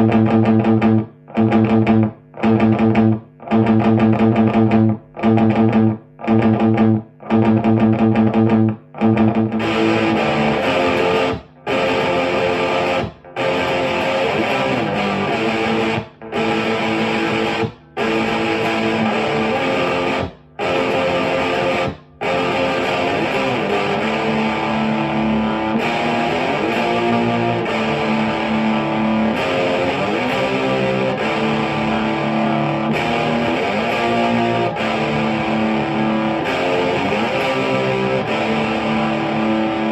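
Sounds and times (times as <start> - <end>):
electric guitar playing: 0.0 - 39.9.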